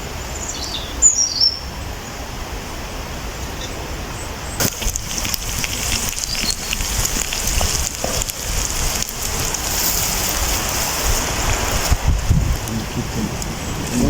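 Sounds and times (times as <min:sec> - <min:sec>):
sausages sizzling: 0:04.6 - 0:14.0.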